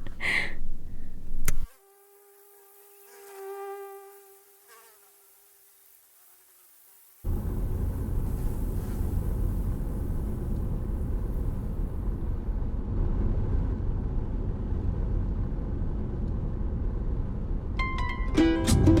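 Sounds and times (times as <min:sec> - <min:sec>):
road and engine rumble: 0:00.0 - 0:01.7, 0:07.3 - 0:17.8
high hiss: 0:00.0 - 0:12.4.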